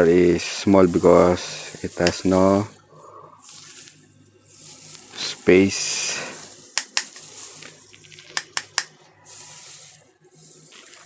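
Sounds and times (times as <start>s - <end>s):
short hiss: 3.4s - 8.6s, 9.2s - 11.0s
small objects clicking: 6.6s - 9.0s.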